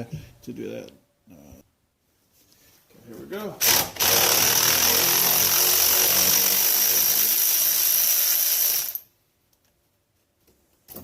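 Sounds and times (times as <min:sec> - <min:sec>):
power drill running: 0:03.6 - 0:09.0.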